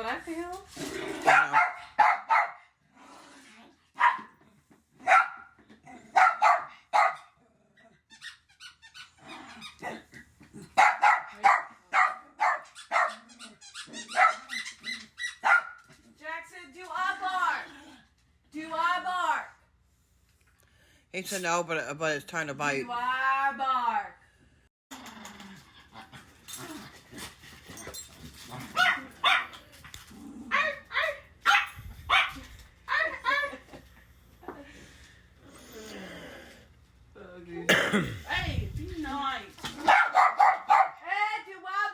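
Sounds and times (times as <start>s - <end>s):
puppy barking: 1.2s - 2.6s, 4.0s - 4.3s, 5.0s - 7.4s, 10.8s - 15.9s, 28.8s - 29.6s, 30.5s - 32.5s, 39.8s - 41.0s
puppy yapping: 10.8s - 15.8s, 39.8s - 41.0s.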